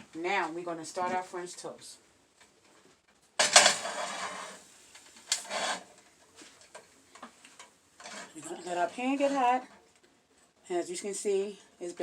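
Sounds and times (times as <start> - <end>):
cookware scraping clatter: 3.4 - 4.6, 5.3 - 5.9, 8.0 - 9.6.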